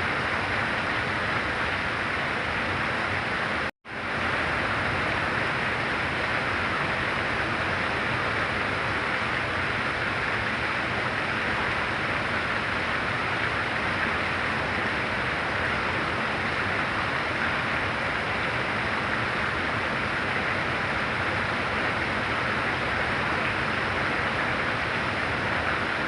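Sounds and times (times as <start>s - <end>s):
heavy rain pouring: 0.0s - 26.0s.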